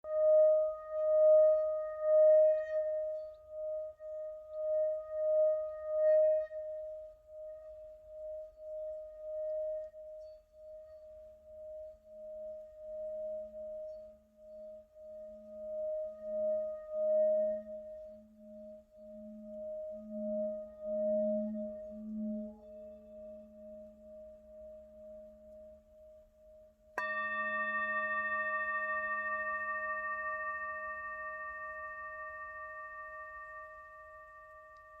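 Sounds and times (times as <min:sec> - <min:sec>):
singing bowl ringing: 0:27.0 - 0:35.0
singing bowl struck: 0:27.0 - 0:35.0.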